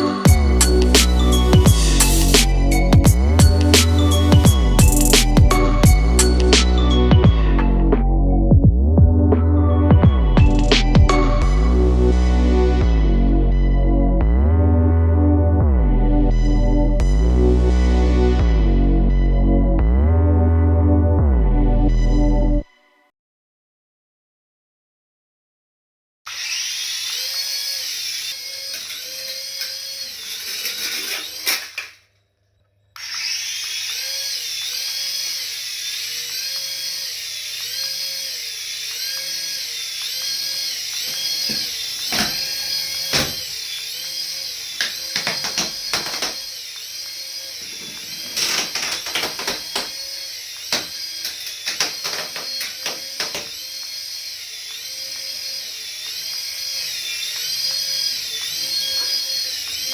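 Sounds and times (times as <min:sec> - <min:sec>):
warbling electronic toy whine: 0:00.0 - 0:07.2, 0:33.4 - 0:59.9.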